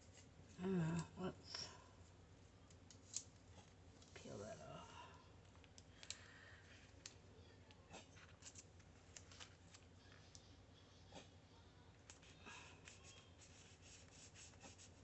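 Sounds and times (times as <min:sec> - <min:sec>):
paper clicking and crinkling: 0:05.5 - 0:10.4.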